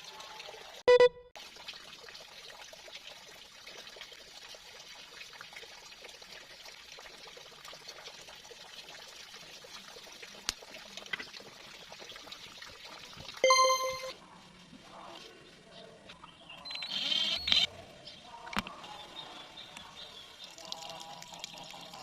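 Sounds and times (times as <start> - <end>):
water trickling: 0.0 - 14.1, 20.0 - 22.0.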